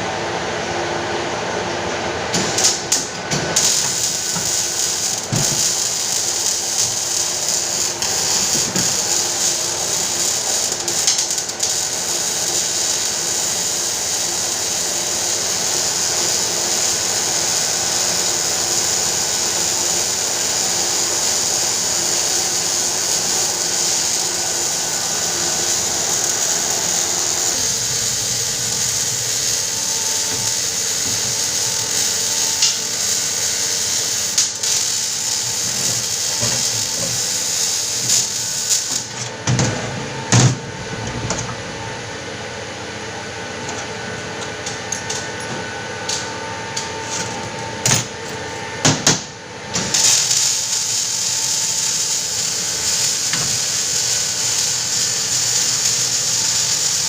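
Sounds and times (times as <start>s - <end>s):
power tool hissing: 2.4s - 39.2s, 49.8s - 57.0s.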